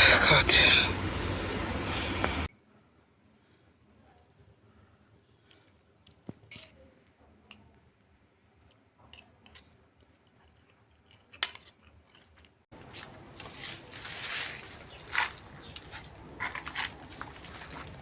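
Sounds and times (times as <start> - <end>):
rustling: 12.8 - 18.0.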